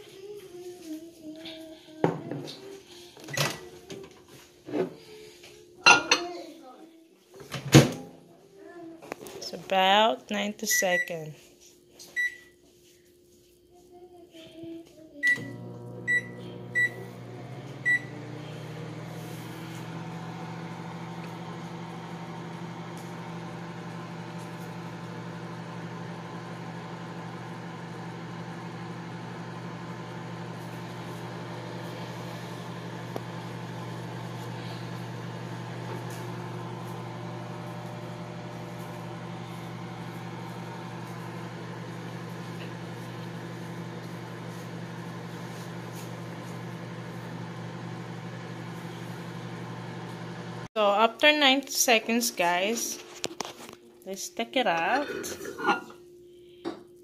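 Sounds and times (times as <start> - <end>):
microwave keypad beeping: 15.2 - 17.0, 17.8 - 18.1
microwave oven humming: 15.2 - 50.7.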